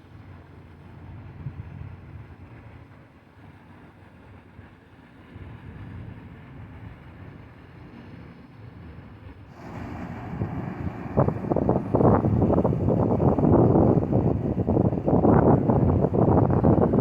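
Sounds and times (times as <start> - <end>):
wind buffeting microphone: 4.2 - 17.0.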